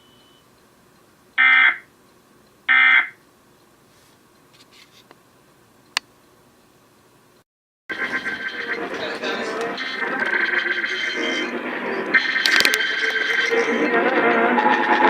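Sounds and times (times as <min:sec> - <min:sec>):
digital data tones: 0:07.9 - 0:15.0
sharp click: 0:12.4 - 0:12.8.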